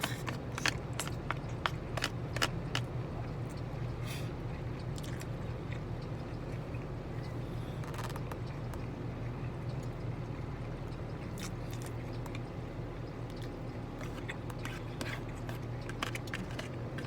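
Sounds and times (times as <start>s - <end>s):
person chewing food: 0.0s - 2.9s, 13.3s - 17.0s
steady low hum: 0.0s - 17.0s.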